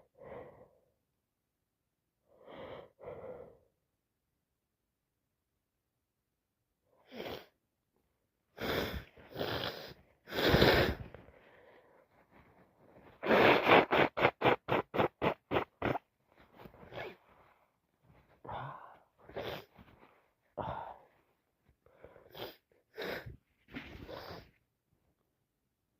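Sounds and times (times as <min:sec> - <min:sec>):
catching breaths: 0:08.6 - 0:13.9, 0:15.6 - 0:24.6
short breathy pulses: 0:08.6 - 0:24.6
person sneezing: 0:13.2 - 0:16.0.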